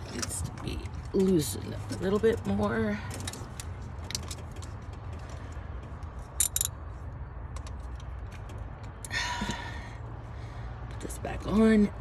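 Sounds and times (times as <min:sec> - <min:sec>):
socket wrench clicking: 0:06.4 - 0:06.8.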